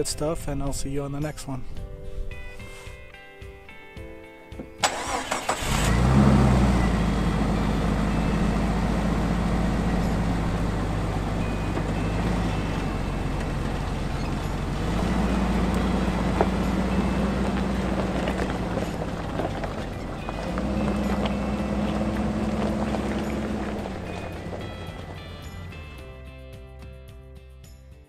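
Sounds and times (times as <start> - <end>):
ignition click: 4.8 - 5.9
car engine starting and idling: 4.8 - 26.2.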